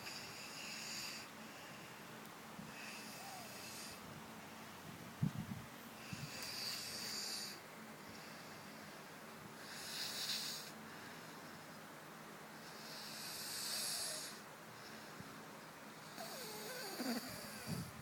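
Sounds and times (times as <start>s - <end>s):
child snoring: 2.7s - 4.0s, 6.0s - 7.6s, 9.6s - 10.8s, 12.6s - 14.4s, 16.0s - 18.0s.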